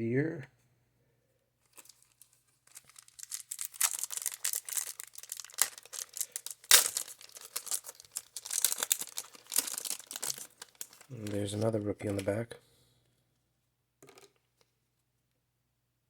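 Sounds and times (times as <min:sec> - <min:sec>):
paper wrapper crinkling: 0:01.6 - 0:12.4
sharp crackle: 0:01.8 - 0:11.4.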